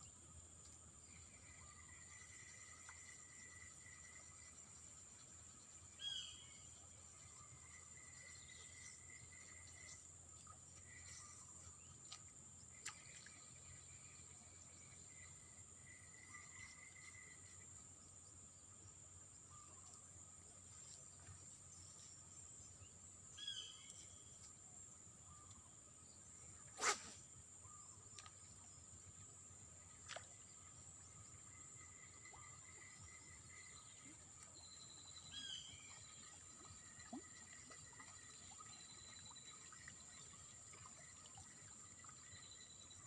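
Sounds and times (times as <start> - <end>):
short bird calls: 26.6 - 27.8.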